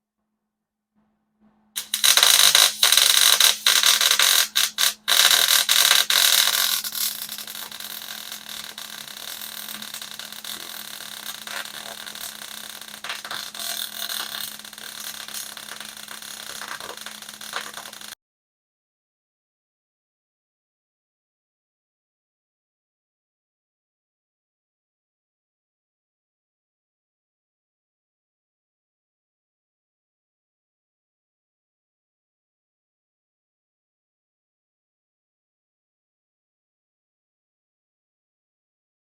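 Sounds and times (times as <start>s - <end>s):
arc welding crackle: 1.8s - 18.2s.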